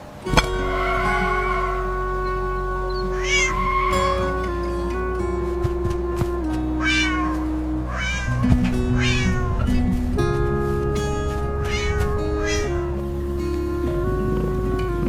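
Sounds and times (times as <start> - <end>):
music with held notes: 0.0 - 15.0
cat meowing: 3.1 - 3.9, 6.8 - 7.3, 7.9 - 9.5, 11.7 - 12.8.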